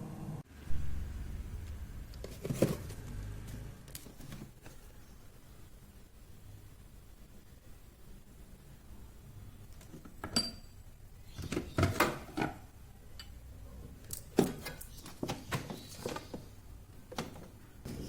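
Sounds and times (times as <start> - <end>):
dishes knocking and clinking: 10.0 - 10.7.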